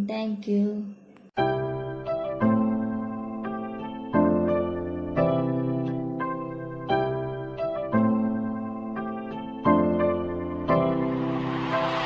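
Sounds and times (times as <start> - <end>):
sustained piano chords: 1.4 - 12.0.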